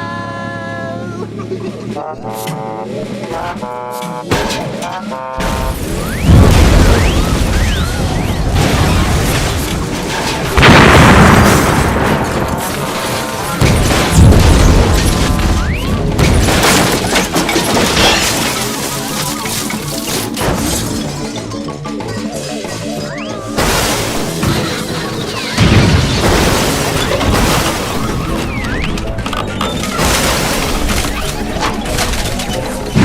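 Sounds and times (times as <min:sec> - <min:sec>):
loud booms and crashes: 0:05.4 - 0:18.9, 0:23.5 - 0:28.9
music: 0:14.5 - 0:26.0, 0:26.9 - 0:33.0.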